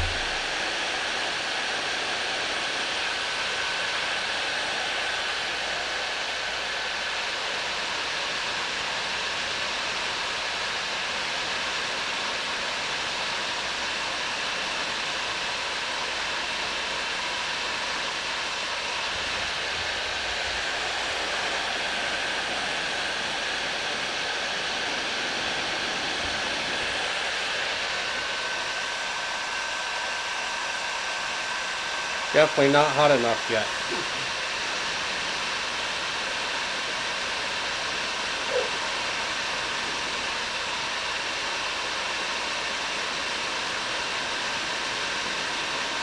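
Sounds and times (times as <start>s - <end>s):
heat gun blowing air: 0.0s - 7.1s.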